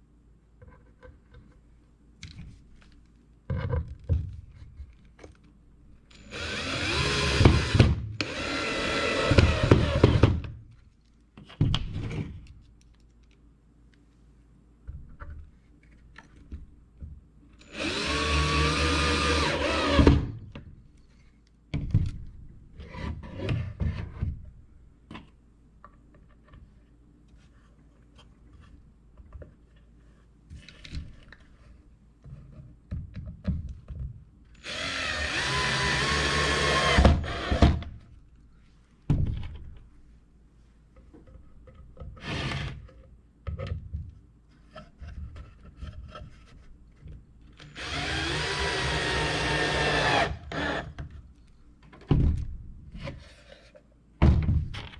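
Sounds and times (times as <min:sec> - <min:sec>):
power drill drilling into wood: 0:06.3 - 0:10.3, 0:17.7 - 0:20.3, 0:34.6 - 0:37.8, 0:47.7 - 0:50.9.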